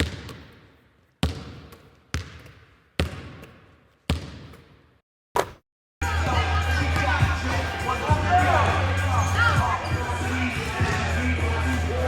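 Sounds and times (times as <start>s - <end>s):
basketball bouncing with echo: 0.0s - 5.0s.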